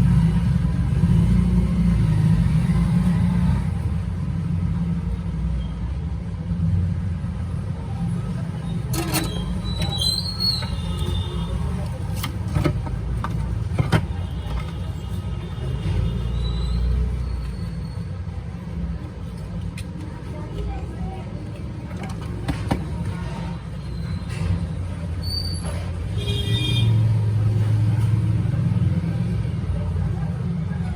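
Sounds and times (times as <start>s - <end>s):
low rumble of road traffic: 0.0s - 30.9s
brief high squeal: 9.2s - 11.4s, 25.2s - 25.9s.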